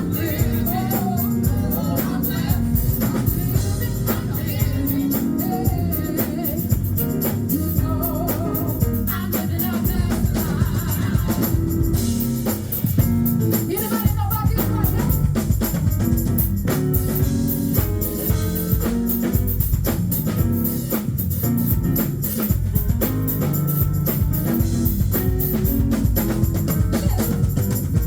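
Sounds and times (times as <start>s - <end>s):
woman singing with vibrato: 0.0s - 6.9s, 7.5s - 11.8s
drum kit: 0.0s - 28.0s
gospel band playing: 0.0s - 28.0s.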